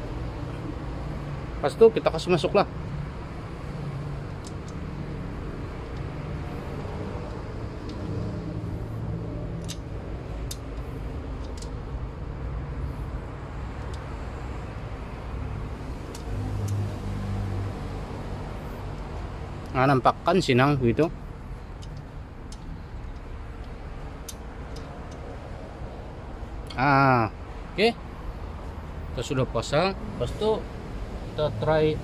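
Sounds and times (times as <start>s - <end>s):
light clicks of metal parts: 3.6s - 15.0s, 15.6s - 17.0s, 18.6s - 26.9s.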